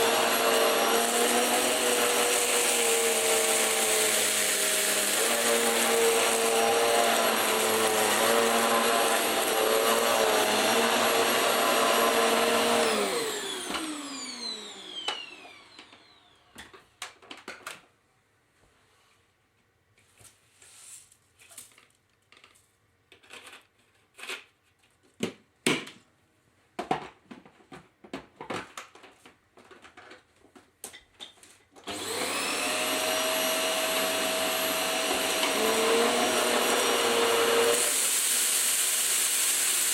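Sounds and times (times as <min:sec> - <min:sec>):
vacuum cleaner motor: 0:00.0 - 0:16.7, 0:31.8 - 0:39.9.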